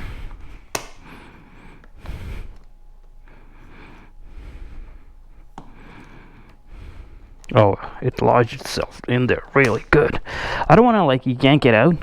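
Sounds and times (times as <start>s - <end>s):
man breathing hard: 0.0s - 8.0s, 10.2s - 10.7s.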